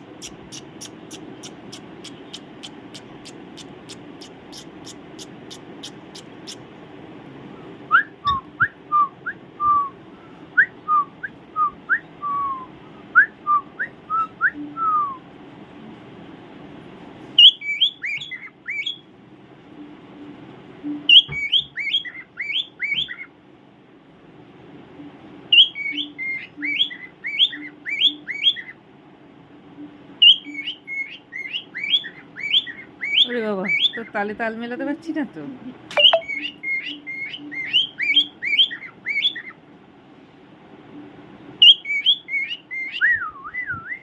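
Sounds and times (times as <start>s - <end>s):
pet bird whistling: 0.0s - 6.6s, 7.9s - 10.0s, 17.4s - 19.0s, 20.9s - 23.3s, 25.5s - 28.8s, 30.2s - 34.1s, 35.9s - 39.6s, 41.6s - 44.0s.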